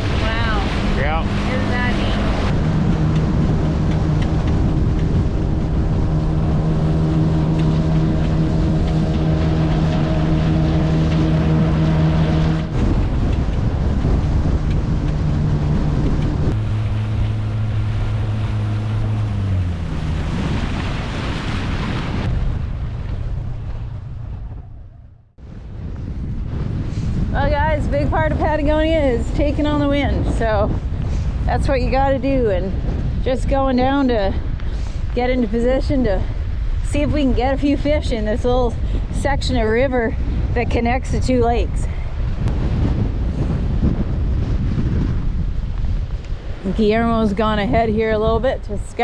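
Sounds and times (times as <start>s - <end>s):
rushing water: 0.0s - 23.5s
boat motor running: 0.0s - 25.5s, 27.3s - 49.0s
wind on microphone: 0.0s - 49.0s.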